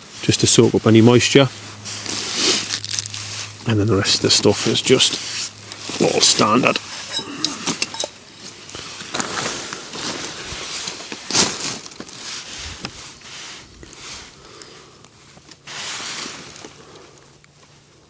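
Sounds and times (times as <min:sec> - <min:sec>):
rustling: 0:00.0 - 0:18.0
camping gear clicks and knocks: 0:06.7 - 0:12.2.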